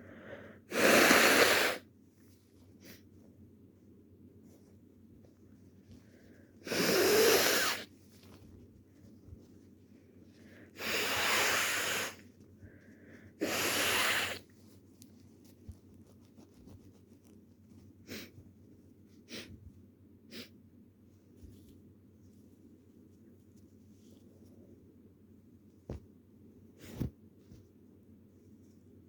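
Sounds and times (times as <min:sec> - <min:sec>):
faint sniffs: 0:00.0 - 0:01.9, 0:02.7 - 0:03.2, 0:06.0 - 0:07.9, 0:10.4 - 0:14.6, 0:18.0 - 0:19.7, 0:20.3 - 0:20.6
person blowing nose: 0:00.7 - 0:01.9, 0:06.6 - 0:07.9, 0:10.8 - 0:12.2, 0:13.4 - 0:14.4.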